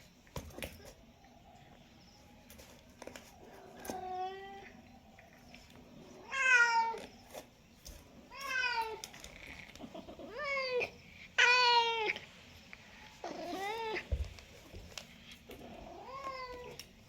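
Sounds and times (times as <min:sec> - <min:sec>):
cat meowing: 0:06.2 - 0:07.1, 0:09.8 - 0:12.2, 0:15.6 - 0:16.8.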